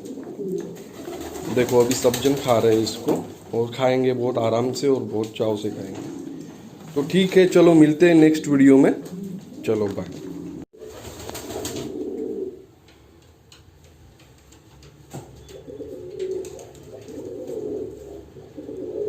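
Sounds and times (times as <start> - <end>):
pigeons cooing: 0.0 - 3.4, 5.7 - 12.7, 15.4 - 19.0.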